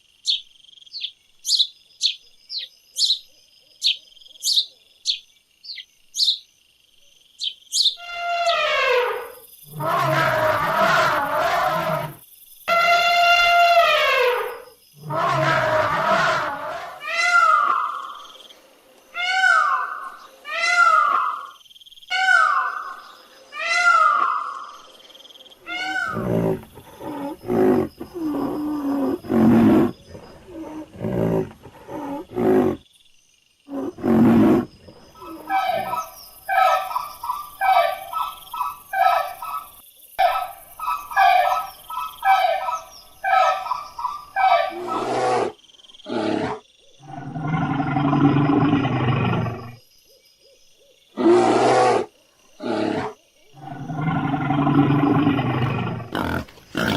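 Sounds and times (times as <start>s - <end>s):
low animal calls: 7.9s - 18.2s, 25.6s - 32.8s, 33.7s - 49.8s, 51.2s - 56.9s.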